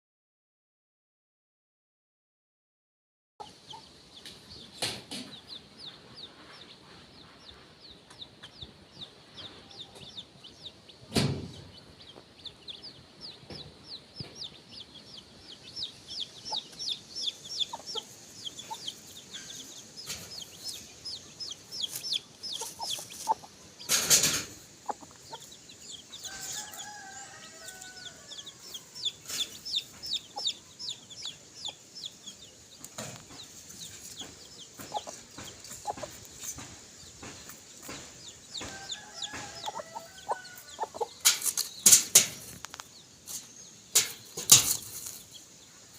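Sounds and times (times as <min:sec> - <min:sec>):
hen clucking softly: 0:03.4 - 0:10.7, 0:12.0 - 0:36.7, 0:38.2 - 0:41.4
baby chicks peeping: 0:03.4 - 0:45.9
loud sharp knocks: 0:11.1 - 0:11.7.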